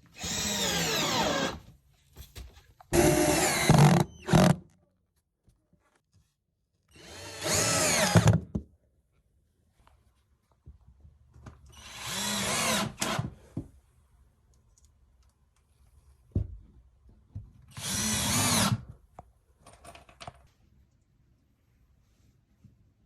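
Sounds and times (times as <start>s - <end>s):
power drill running: 0.2s - 1.6s, 3.0s - 4.4s, 6.9s - 8.3s, 11.8s - 13.3s, 17.7s - 18.8s.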